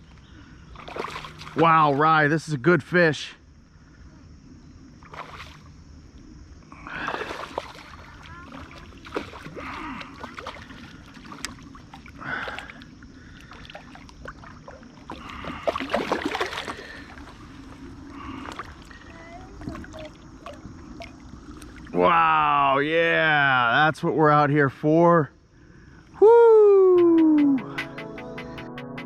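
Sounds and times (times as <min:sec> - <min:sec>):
water splashing and sloshing: 0:00.0 - 0:02.5, 0:04.8 - 0:22.2.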